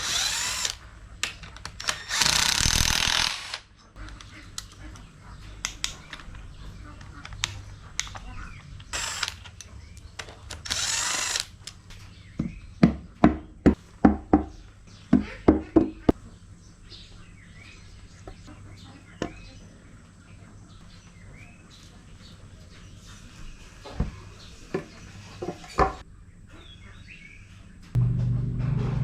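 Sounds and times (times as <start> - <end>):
power tool bursts: 0.0 - 0.8, 1.8 - 3.7, 8.9 - 9.4, 10.6 - 11.5.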